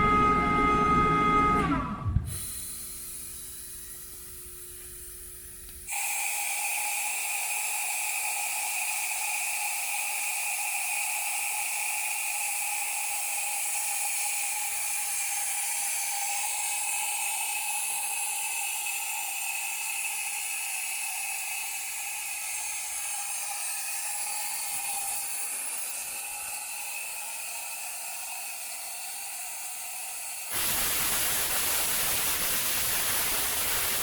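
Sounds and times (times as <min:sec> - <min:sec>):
air compressor whine winding down: 0:00.0 - 0:07.2, 0:21.6 - 0:34.0
steady air hiss: 0:30.5 - 0:34.0.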